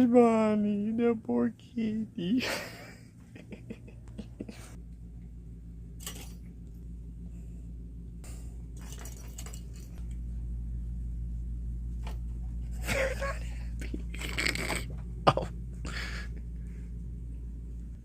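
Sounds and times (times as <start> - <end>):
steady low hum: 0.0 - 18.0
rustling and clinking: 6.0 - 6.6, 8.7 - 10.2.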